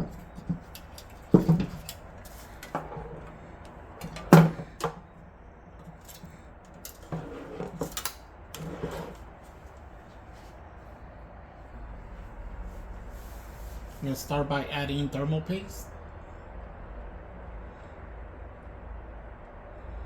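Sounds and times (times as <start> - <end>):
clicks and knocks of hard objects: 0.0 - 3.4, 4.0 - 5.1.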